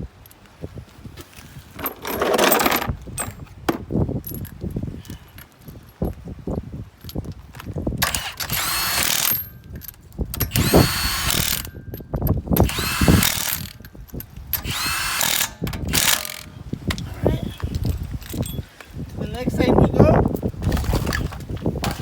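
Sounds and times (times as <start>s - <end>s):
impact wrench hammering: 8.0s - 9.5s, 10.4s - 11.8s, 12.6s - 13.8s, 14.6s - 16.6s.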